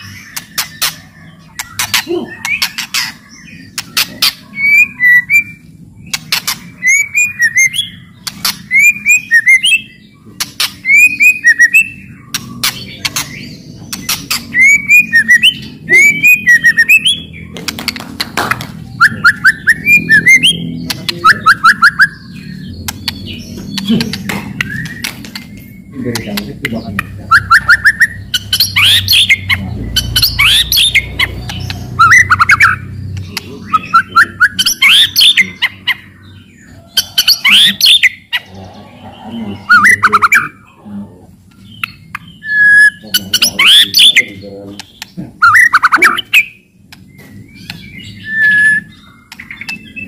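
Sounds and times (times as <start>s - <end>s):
bird whistled song phrases: 0.0s - 5.6s, 6.8s - 8.1s, 8.7s - 10.0s, 10.8s - 12.4s, 14.5s - 17.4s, 18.9s - 22.6s, 27.2s - 36.0s, 39.0s - 40.6s, 41.8s - 44.4s, 45.4s - 46.6s, 47.2s - 50.0s
bird harsh clicking calls: 0.0s - 38.5s, 39.7s - 40.8s, 41.4s - 50.0s.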